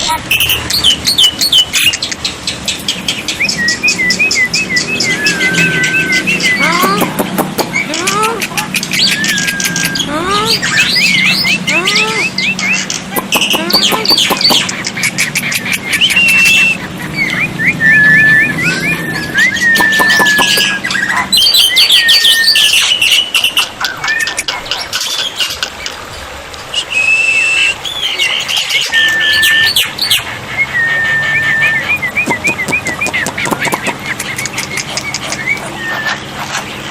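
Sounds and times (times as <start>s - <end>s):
fast clicking bird chatter: 0.0s - 11.5s, 12.5s - 17.5s, 19.6s - 26.2s, 32.2s - 36.9s
birds whistling and chirping: 0.0s - 26.0s, 26.6s - 36.9s.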